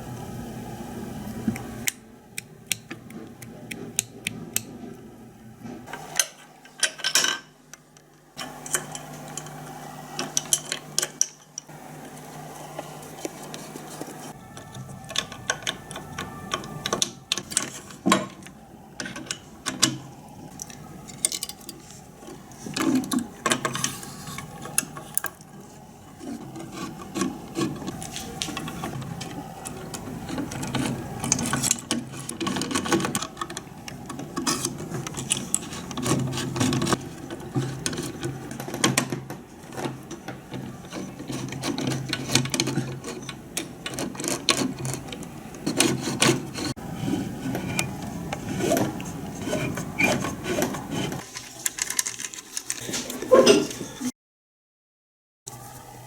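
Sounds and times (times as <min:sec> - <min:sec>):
mechanism clicking and rattling: 0:14.5 - 0:25.6, 0:26.2 - 0:53.2
rubbing: 0:45.6 - 0:51.3.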